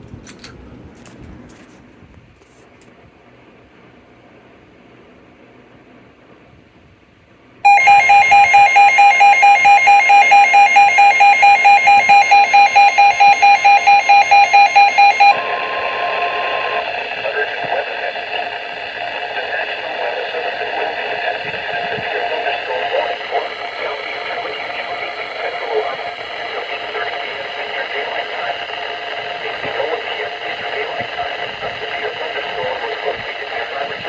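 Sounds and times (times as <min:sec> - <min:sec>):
loud pulsing beeping tone: 0:07.7 - 0:15.6.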